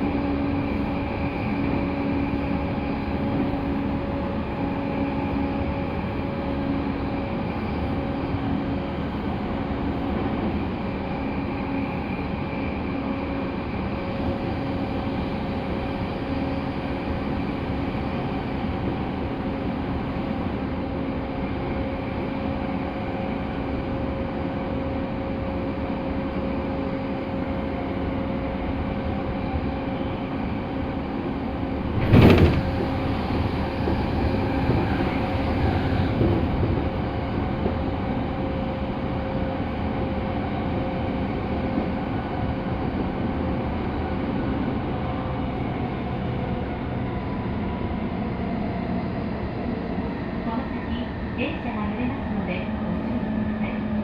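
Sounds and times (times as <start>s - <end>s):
train cabin rumble and hum: 0.0s - 54.0s
loud thump: 32.0s - 32.9s.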